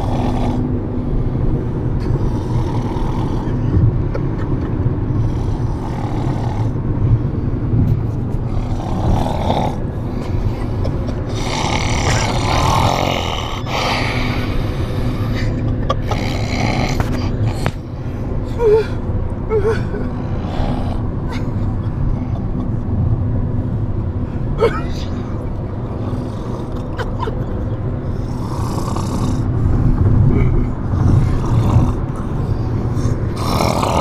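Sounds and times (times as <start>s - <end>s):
person snoring loudly: 0.0s - 0.7s, 2.1s - 3.6s, 5.2s - 6.8s, 8.5s - 9.8s, 11.3s - 15.2s, 16.0s - 17.7s, 20.4s - 21.0s, 28.2s - 29.5s, 30.9s - 32.4s, 33.0s - 34.0s
steady low rumble: 0.0s - 34.0s.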